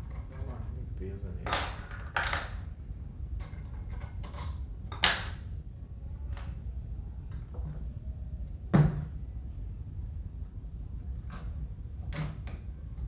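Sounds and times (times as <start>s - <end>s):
fan parts knocking and clunking: 0.0s - 5.4s.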